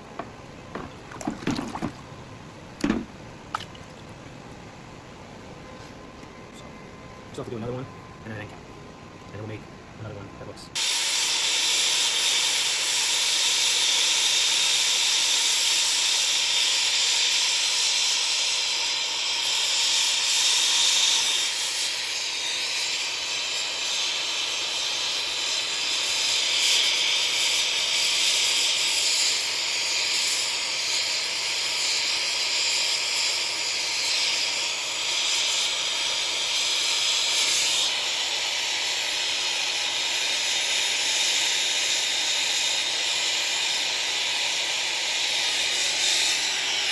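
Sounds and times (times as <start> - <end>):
gas torch flame hissing: 10.7 - 46.9.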